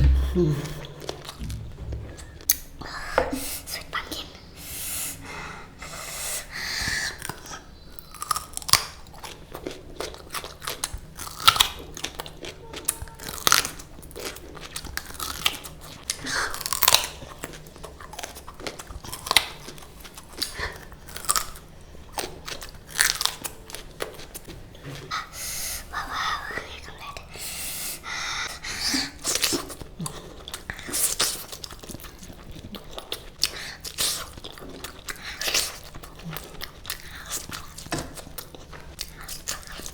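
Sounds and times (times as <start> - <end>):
crunching and chewing pumpkin: 6.9 - 25.3, 28.4 - 39.9.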